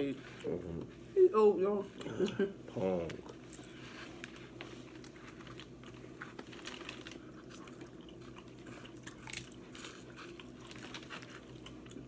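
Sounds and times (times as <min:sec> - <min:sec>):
chewing and crunching: 0:03.0 - 0:12.0.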